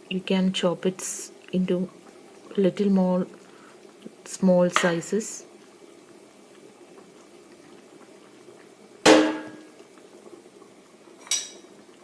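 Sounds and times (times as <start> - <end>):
curry bubbling: 0.0 - 12.0
metal clanks on cooking pot: 11.2 - 11.6.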